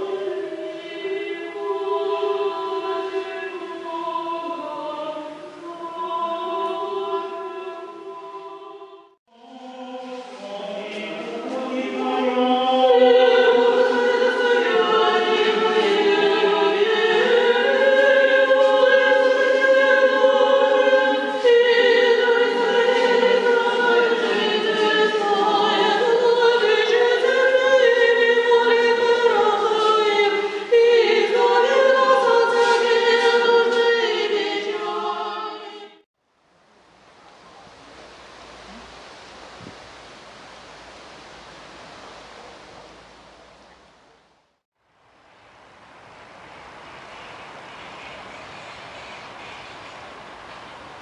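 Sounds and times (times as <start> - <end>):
choir singing sustained chords: 0.0 - 36.1.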